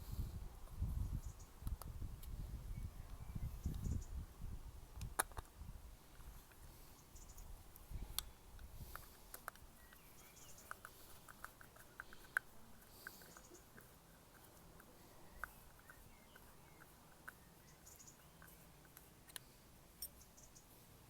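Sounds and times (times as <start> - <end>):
small plastic parts clicking: 5.0 - 5.5, 7.3 - 20.2.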